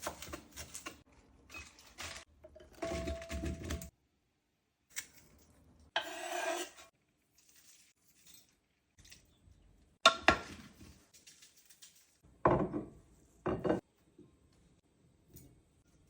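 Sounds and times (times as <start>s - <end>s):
utensils scraping and clattering: 4.9s - 9.4s.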